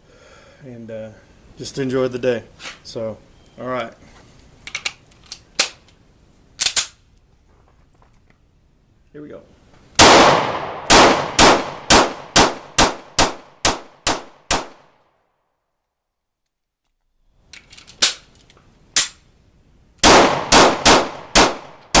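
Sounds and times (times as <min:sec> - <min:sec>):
pistol shots: 0:10.0 - 0:14.9, 0:20.0 - 0:22.0.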